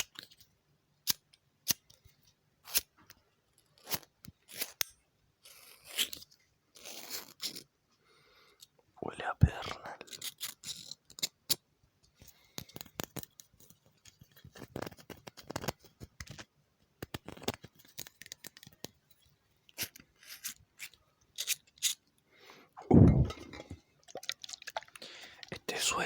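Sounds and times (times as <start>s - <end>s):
bottle clicks and rustles: 23.1s - 25.6s.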